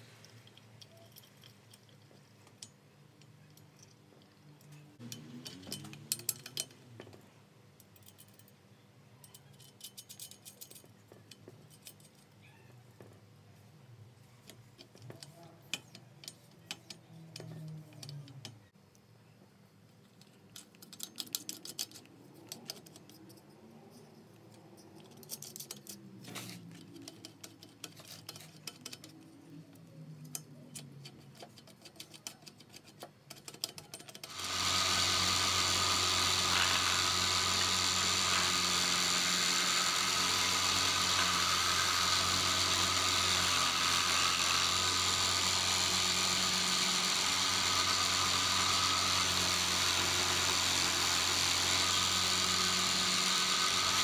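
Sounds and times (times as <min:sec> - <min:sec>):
clicks and knocks of handling parts: 0:00.1 - 0:08.6, 0:09.2 - 0:12.4, 0:14.4 - 0:19.0, 0:19.9 - 0:34.4
power tool motor running: 0:34.3 - 0:54.0.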